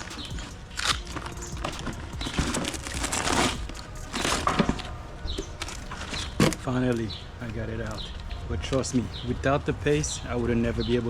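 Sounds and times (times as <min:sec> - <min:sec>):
fiberglass cracking and scraping: 0:00.0 - 0:08.5.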